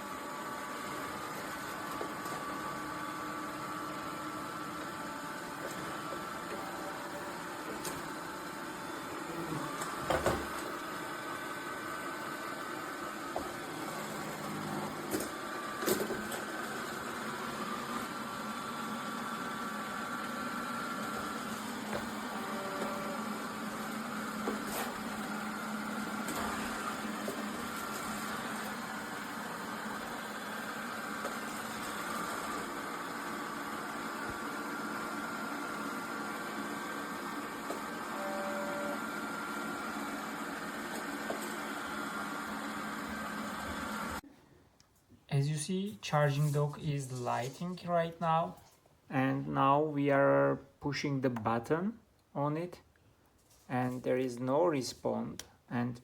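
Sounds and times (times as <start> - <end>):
robot vacuum motor hum: 0.0 - 44.2.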